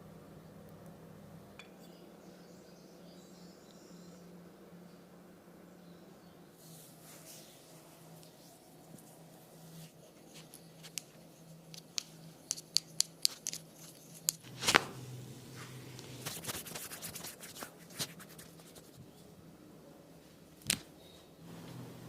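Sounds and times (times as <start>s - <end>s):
faint low hum: 0.0s - 22.0s
hands rubbing and scratching hair: 6.6s - 19.2s.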